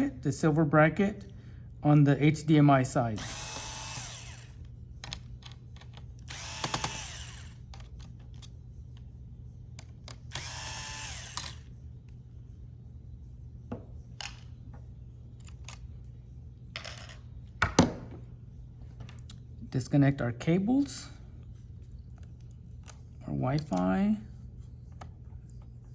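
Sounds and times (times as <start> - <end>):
electric screwdriver whine: 3.2 - 4.7, 6.2 - 7.6, 10.3 - 11.7.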